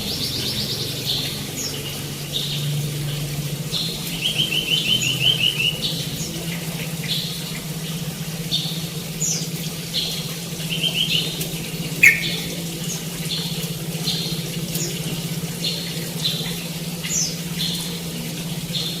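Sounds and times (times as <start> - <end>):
songbird chirps: 8.5 - 19.0
bird trill: 12.0 - 12.6
downward-swept bird call: 12.0 - 12.6.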